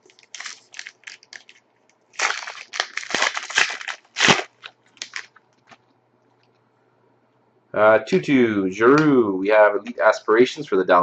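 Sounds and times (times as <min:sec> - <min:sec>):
foil wrapper crinkling and tearing: 0:00.0 - 0:05.8.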